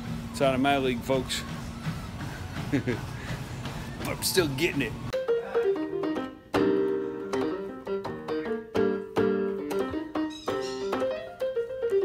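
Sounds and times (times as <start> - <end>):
piano music: 5.1 - 12.0.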